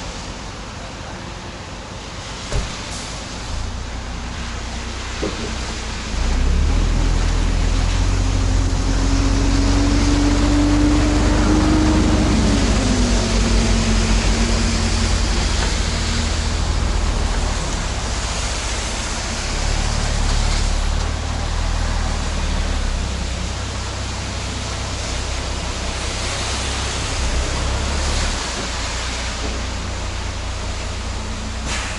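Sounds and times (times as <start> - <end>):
broad hiss: 0.0 - 31.9
diesel engine rumbling: 0.0 - 31.9.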